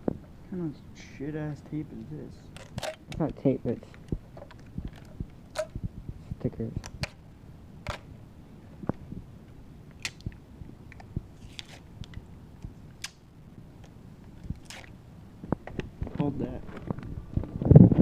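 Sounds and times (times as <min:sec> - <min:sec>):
plastic clicks and rustles: 0:02.6 - 0:05.7.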